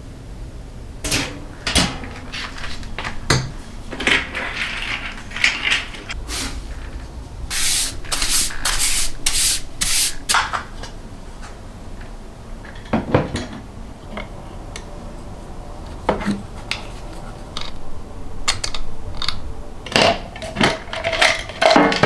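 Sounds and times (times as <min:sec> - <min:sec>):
hand scrubbing a surface: 0:07.5 - 0:10.5.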